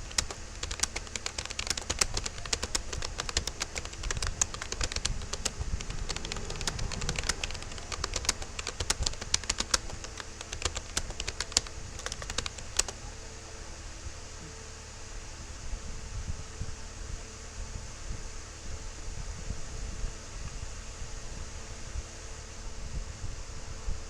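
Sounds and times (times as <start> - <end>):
keyboard typing clicks: 0.0 - 13.0.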